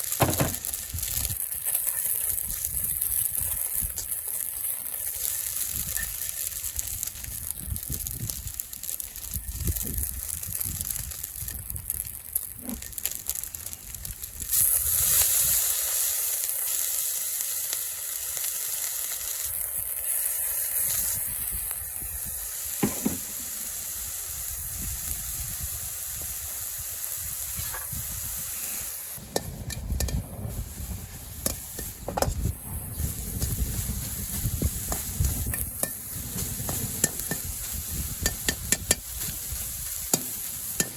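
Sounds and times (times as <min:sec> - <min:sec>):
food sizzling in hot oil: 0:00.0 - 0:40.9
stirring knocks and scrapes in wok: 0:29.2 - 0:40.9.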